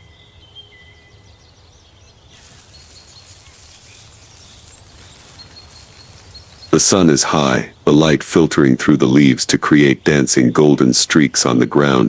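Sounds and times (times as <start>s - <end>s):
thin whistled calls: 0.0s - 7.2s
high insect hiss: 2.3s - 7.2s.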